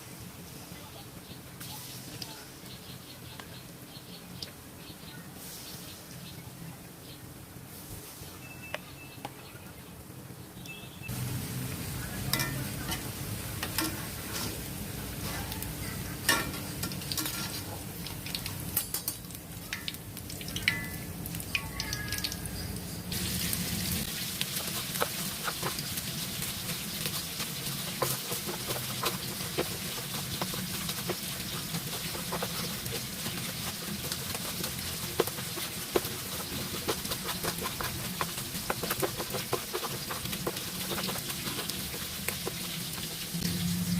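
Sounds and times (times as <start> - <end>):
food sizzling in hot oil: 11.1 - 43.9
utensils clinking in a pan: 12.2 - 14.6, 15.2 - 23.2.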